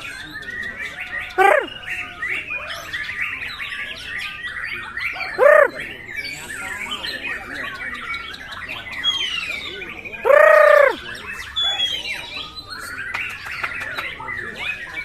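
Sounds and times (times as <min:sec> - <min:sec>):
bird singing chirps and warbles: 0:00.0 - 0:15.0
loud short bird cries: 0:05.2 - 0:05.9, 0:10.2 - 0:11.0.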